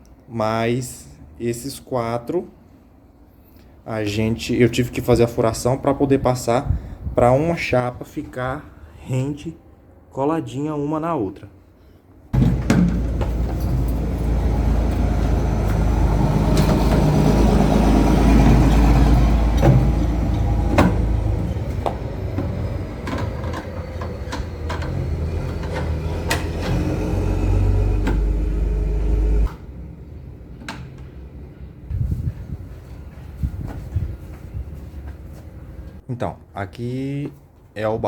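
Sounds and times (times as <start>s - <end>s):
vehicle low rumble: 12.4s - 36.0s.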